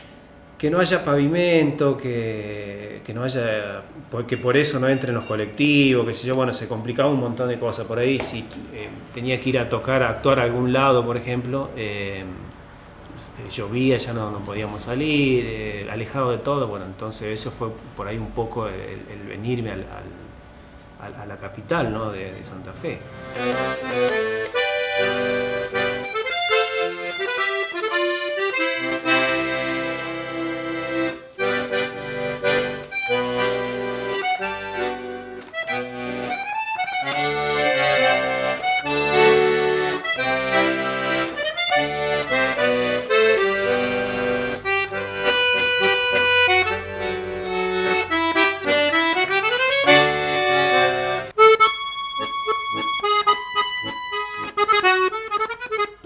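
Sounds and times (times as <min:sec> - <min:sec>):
accordion playing folk tune: 0:04.2 - 0:06.3, 0:23.0 - 0:56.0.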